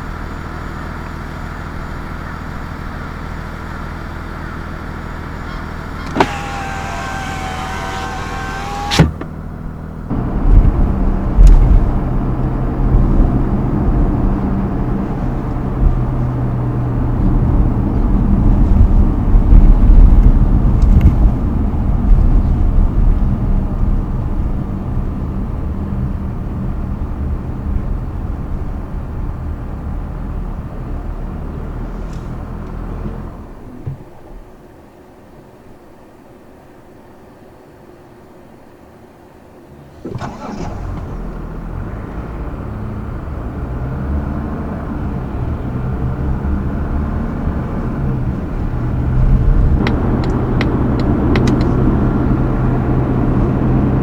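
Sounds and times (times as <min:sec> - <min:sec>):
diesel engine idling: 0:00.0 - 0:18.3, 0:39.8 - 0:43.3
road rumble: 0:00.0 - 0:37.2, 0:38.4 - 0:54.0
car accelerating: 0:02.5 - 0:20.7, 0:39.7 - 0:54.0
click: 0:05.5 - 0:09.3, 0:49.8 - 0:51.8.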